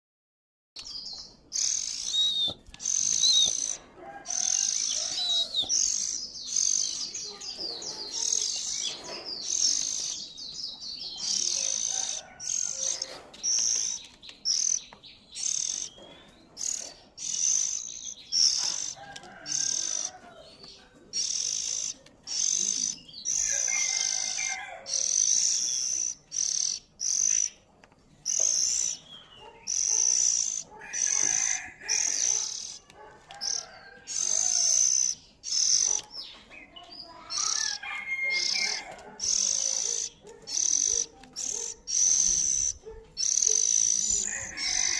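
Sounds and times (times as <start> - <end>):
young bird begging calls: 1.6 - 10.2, 29.6 - 36.1, 37.1 - 44.9.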